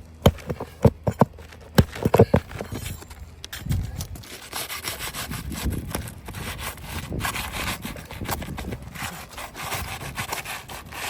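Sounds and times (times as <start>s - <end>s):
tool scraping under shingles: 0.0s - 11.0s.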